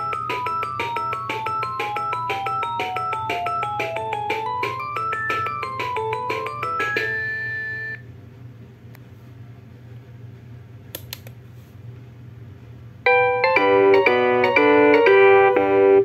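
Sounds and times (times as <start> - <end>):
bell-like polyphonic ringtone: 0.0 - 8.0
chiming electronic ringtone melody: 0.0 - 8.0.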